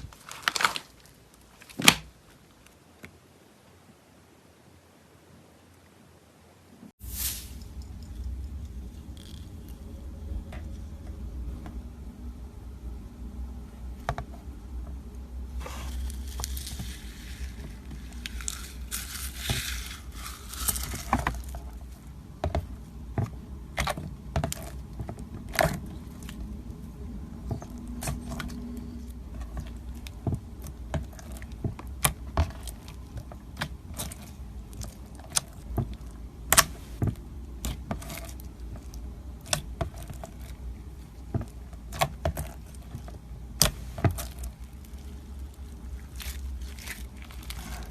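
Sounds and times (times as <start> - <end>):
low steady hum: 0.0 - 47.9
slime being kneaded by hand: 15.6 - 47.9.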